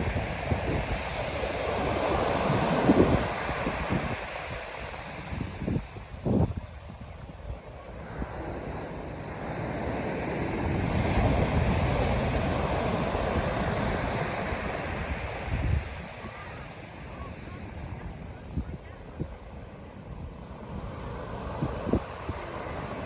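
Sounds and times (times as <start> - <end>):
ocean waves breaking: 0.0 - 6.3, 7.8 - 23.0
wind buffeting microphone: 0.0 - 23.0.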